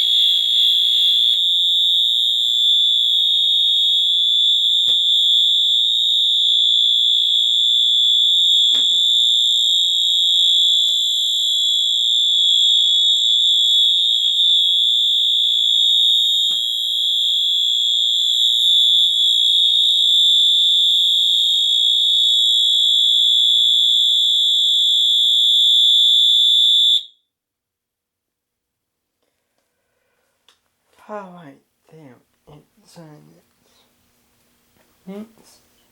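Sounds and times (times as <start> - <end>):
fire alarm high-pitched tone: 0.0 - 27.3.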